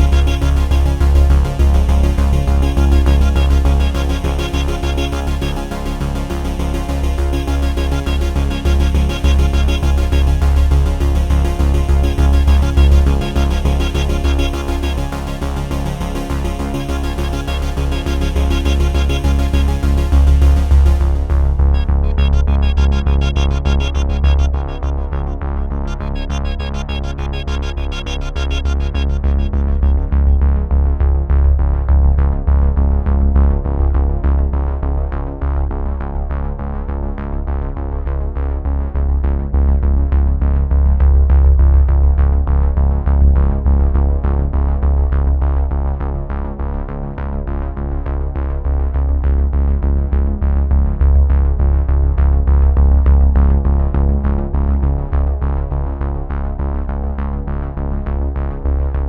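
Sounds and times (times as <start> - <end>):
electronic synthesizer music: 0.0 - 30.7.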